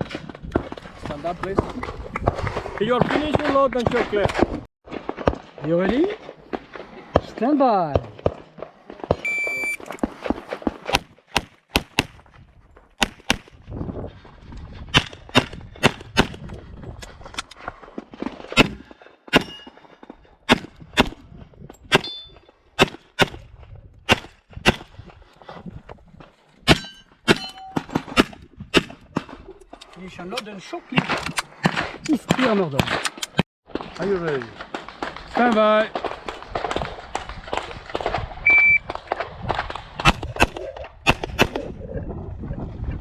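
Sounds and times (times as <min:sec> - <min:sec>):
shot timer beep: 0:09.2 - 0:09.8, 0:38.5 - 0:38.8
metallic ring: 0:22.0 - 0:22.4, 0:26.8 - 0:27.8.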